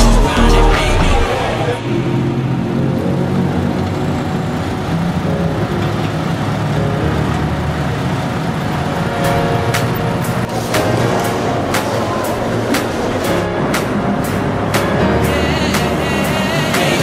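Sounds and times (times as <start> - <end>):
electronic dance music bass line: 0.0 - 1.7.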